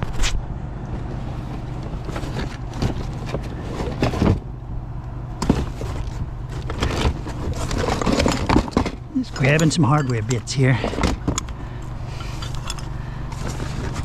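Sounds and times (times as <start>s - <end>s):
steady low hum: 0.0s - 14.0s
scrap metal clanking: 5.4s - 14.0s.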